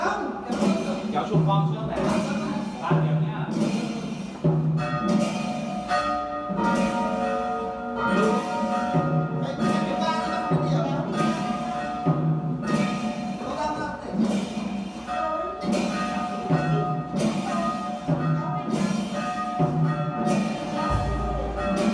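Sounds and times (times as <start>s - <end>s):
church bells tolling: 3.9s - 13.7s, 14.3s - 21.9s.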